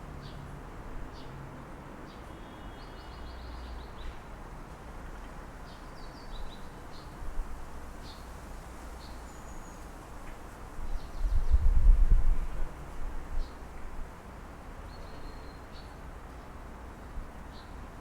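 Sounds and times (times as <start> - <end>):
distant city traffic rumble: 0.0 - 11.3.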